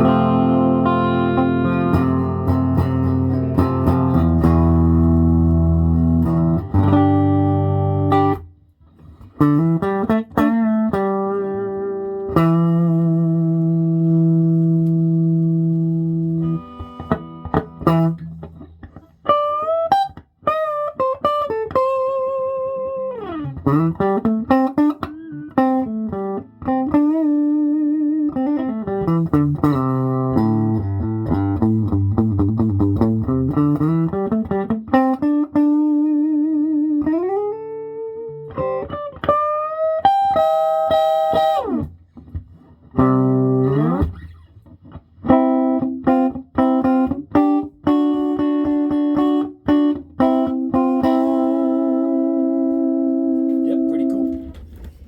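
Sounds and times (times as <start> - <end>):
electric guitar sliding notes: 0.0 - 8.5, 9.3 - 20.1, 45.2 - 54.7.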